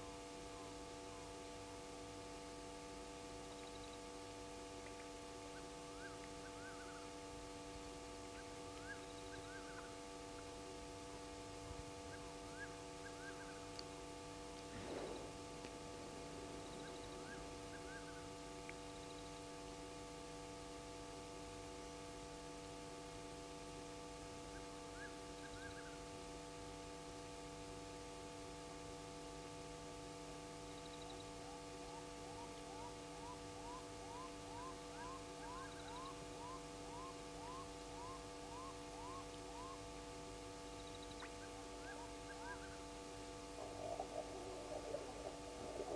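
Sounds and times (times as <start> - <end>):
electrical hum and hiss: 0.0 - 45.9
animals chirping: 43.6 - 45.9.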